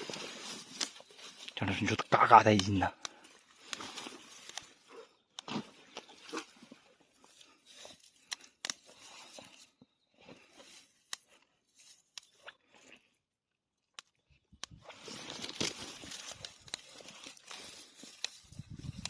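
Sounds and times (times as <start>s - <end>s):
fern stalks snapping: 0.0s - 6.7s, 7.4s - 9.6s, 13.9s - 19.0s
leaves and undergrowth rustling: 0.0s - 12.4s, 14.8s - 19.0s.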